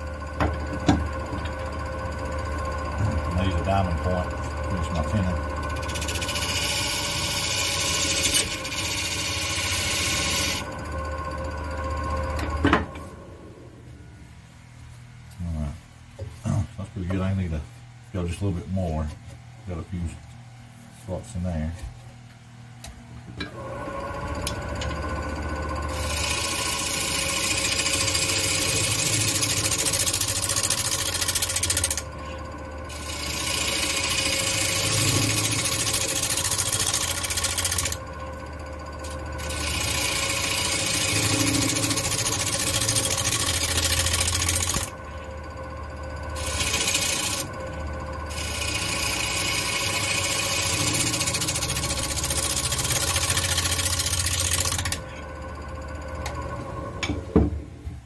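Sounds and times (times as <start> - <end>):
wood lathe motor humming: 0.0 - 13.7, 23.4 - 57.5
turning tool scraping wood: 3.2 - 10.6, 26.2 - 38.0, 39.0 - 44.9, 46.4 - 47.5, 48.3 - 55.2.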